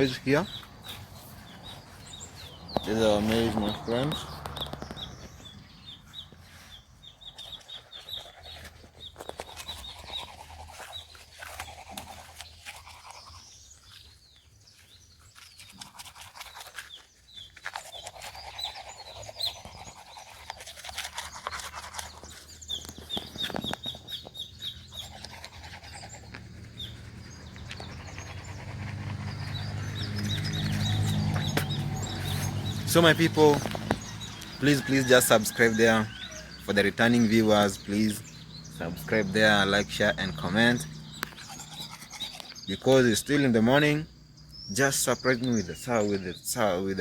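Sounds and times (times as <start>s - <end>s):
birds chirping: 0.0s - 47.0s
scratchy rustling: 7.4s - 14.2s.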